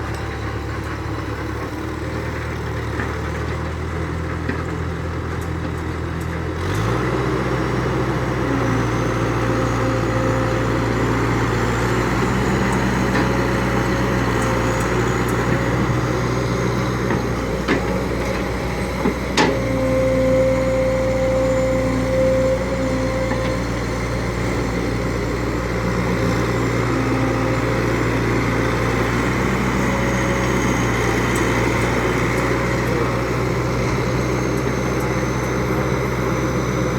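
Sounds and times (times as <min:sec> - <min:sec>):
model excavator motor hum: 0:00.0 - 0:36.9
thin whine: 0:08.5 - 0:35.8.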